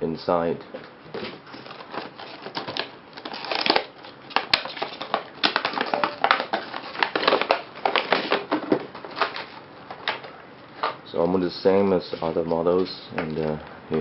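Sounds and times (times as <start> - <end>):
packaging crinkling: 1.2 - 10.3.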